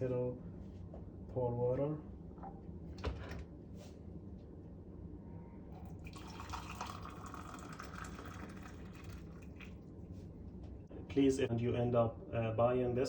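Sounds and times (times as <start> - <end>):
boiled water pouring from kettle: 6.0 - 9.8.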